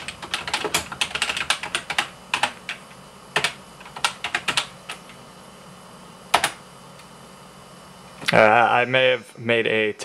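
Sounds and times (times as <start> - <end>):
computer keyboard typing: 0.0 - 5.2, 6.3 - 6.6.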